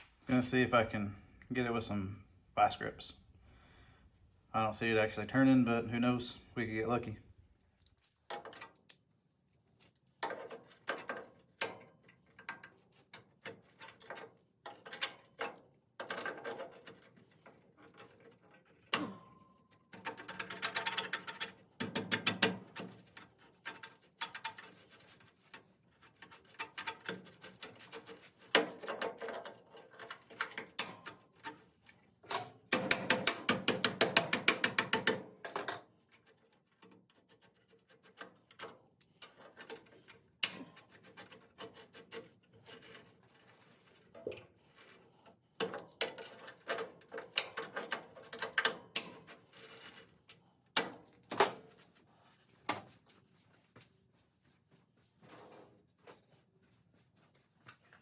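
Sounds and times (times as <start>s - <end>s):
hand tools clicking on metal: 32.2s - 35.8s.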